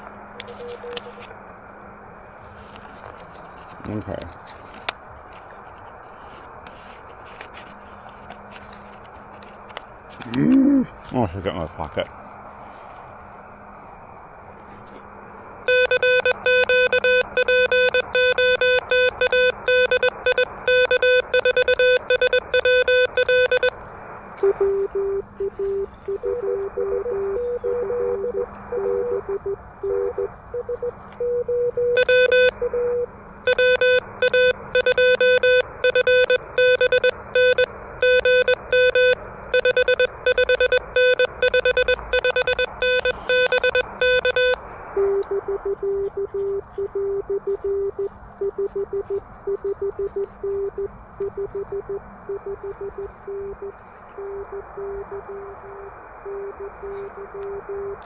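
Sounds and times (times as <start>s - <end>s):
morse code beeps: 0.5s - 1.0s, 15.7s - 23.8s, 24.4s - 58.0s
keyed sidetone beeps: 15.7s - 23.7s, 24.4s - 58.0s.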